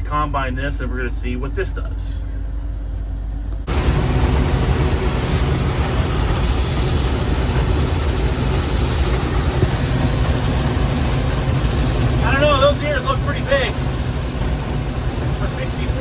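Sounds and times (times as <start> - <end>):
combine harvester drone: 2.2 - 16.0.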